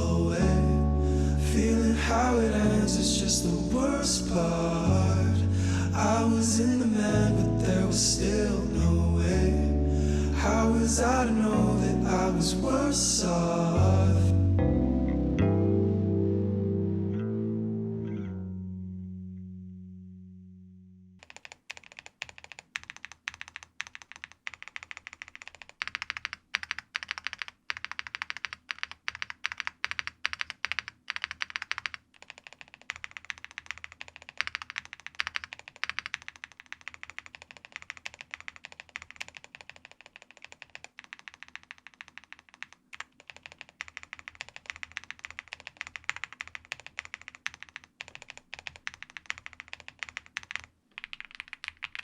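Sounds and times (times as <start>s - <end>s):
fast typing on mechanical keyboard: 21.2s - 52.0s.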